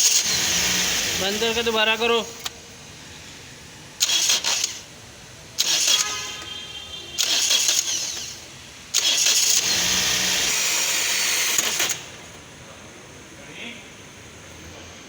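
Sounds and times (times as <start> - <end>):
starter motor whirring: 0.0 - 2.6, 4.0 - 4.9, 5.6 - 6.2, 7.2 - 12.4.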